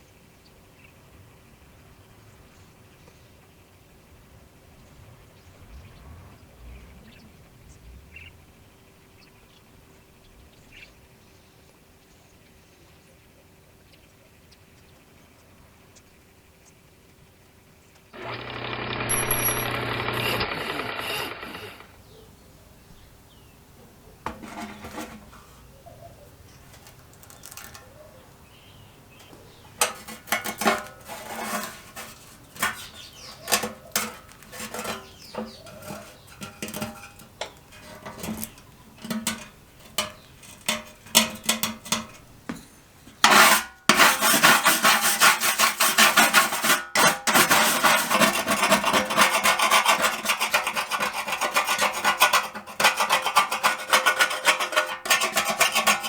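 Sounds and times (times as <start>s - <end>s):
abrasive scraping on rusted steel: 18.2s - 22.0s, 24.3s - 25.6s, 29.8s - 56.0s.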